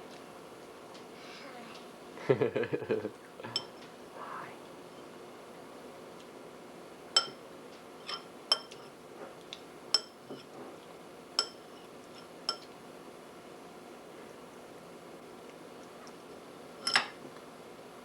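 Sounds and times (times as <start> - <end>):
spoon clinking against bowl: 3.6 - 3.8, 7.2 - 7.4, 8.1 - 8.8, 9.9 - 10.4, 11.4 - 11.8, 12.4 - 12.7.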